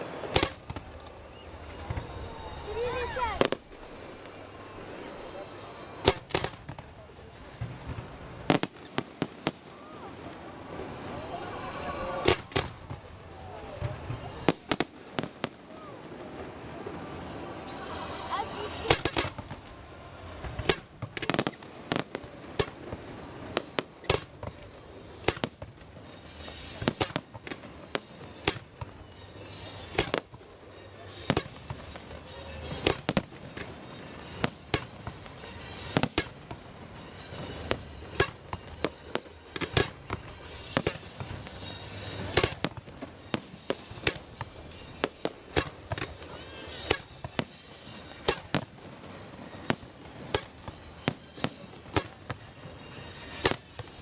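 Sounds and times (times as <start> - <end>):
firework bangs: 0.0 - 54.0
hissing and crackling: 42.2 - 54.0.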